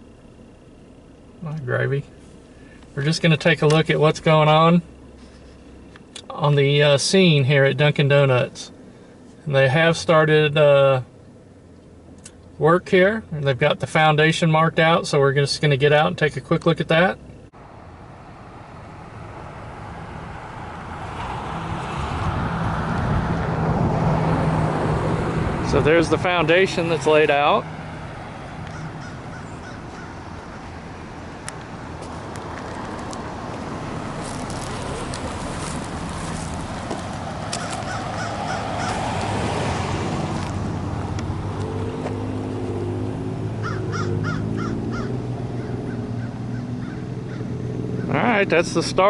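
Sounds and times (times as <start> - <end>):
steady low hum: 0.0 - 21.0
outdoor background noise: 0.0 - 49.0
vehicle engine hum and road noise: 0.0 - 49.0
bird calling: 26.6 - 31.4, 34.5 - 39.2, 43.5 - 48.2.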